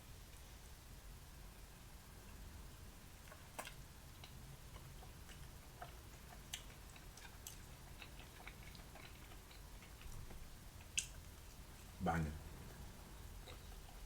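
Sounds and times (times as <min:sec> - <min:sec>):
chewing with wet mouth clicks: 0:03.2 - 0:12.0, 0:12.7 - 0:14.0.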